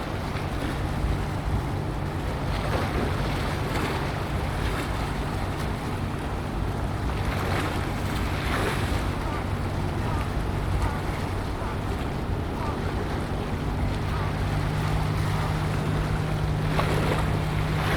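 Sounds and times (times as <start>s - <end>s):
sea water washing: 0.0s - 17.9s
steady low hum: 8.0s - 17.9s.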